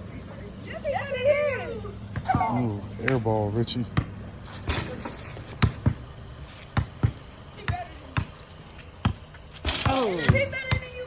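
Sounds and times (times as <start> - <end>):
basketball bouncing on pavement: 2.1 - 3.2, 3.8 - 11.0.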